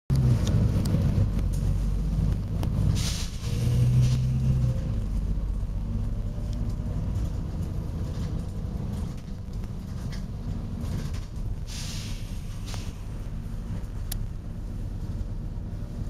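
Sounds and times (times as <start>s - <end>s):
diesel bus engine rumbling: 0.1s - 16.0s
compressed air hiss: 11.7s - 13.1s.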